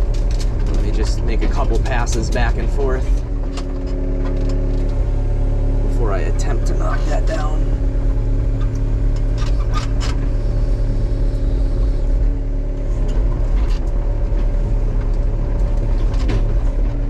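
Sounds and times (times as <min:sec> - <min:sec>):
logs cracking and knocking: 0:00.0 - 0:05.0
excavator diesel engine running: 0:00.0 - 0:17.0.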